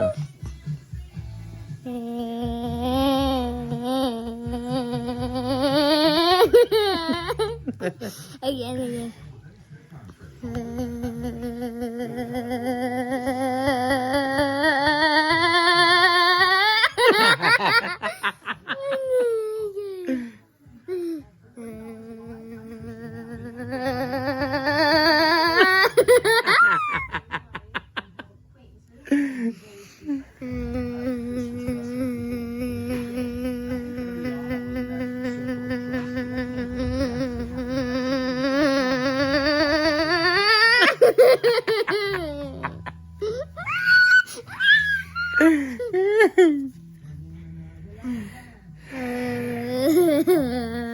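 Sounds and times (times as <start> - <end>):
child humming: 1.8 - 7.4, 10.4 - 17.0, 21.6 - 26.0, 30.4 - 45.8, 48.9 - 50.9
person holding funny vocal note: 1.9 - 7.6, 22.4 - 27.0, 30.4 - 46.4.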